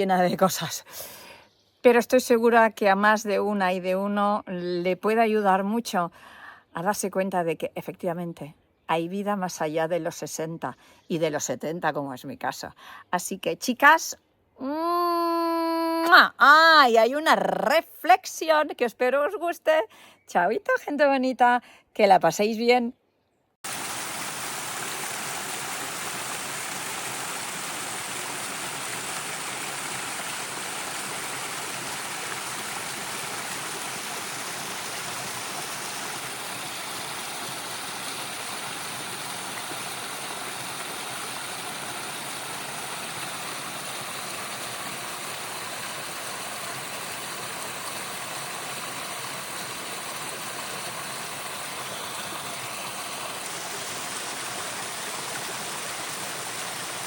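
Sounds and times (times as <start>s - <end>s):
stream water rushing: 23.6s - 57.0s.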